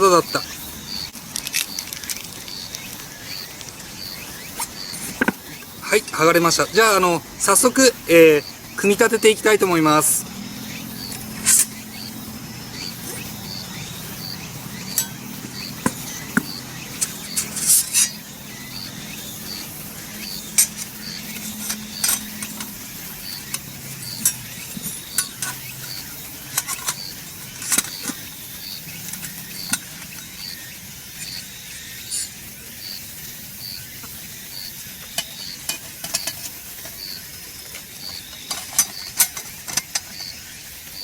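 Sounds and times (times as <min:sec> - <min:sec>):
metal parts clinking and knocking: 0:12.8 - 0:28.3, 0:38.3 - 0:40.3.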